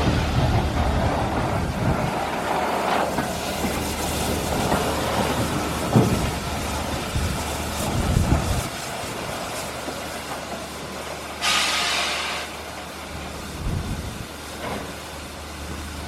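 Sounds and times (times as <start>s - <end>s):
train rumbling on rails: 0.0s - 16.0s.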